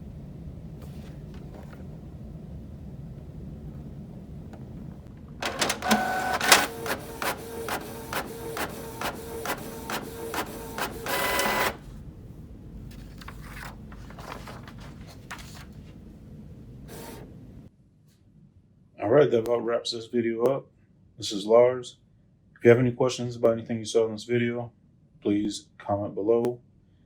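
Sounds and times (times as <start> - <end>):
printer motor whirring and clicking: 5.4 - 11.9, 16.9 - 17.3.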